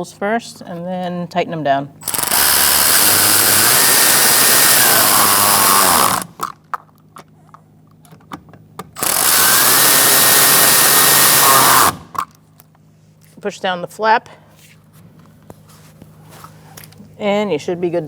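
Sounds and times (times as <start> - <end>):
cordless power driver running: 2.0 - 6.5, 9.0 - 12.2.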